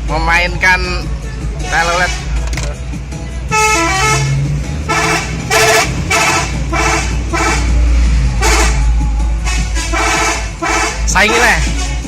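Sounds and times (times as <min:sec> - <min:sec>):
musical car horn: 0:03.5 - 0:12.0.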